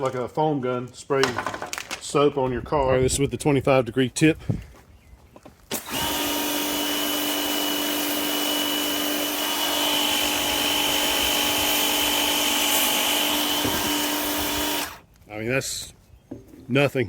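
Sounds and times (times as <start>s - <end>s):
power cleaner whine: 5.7s - 15.0s.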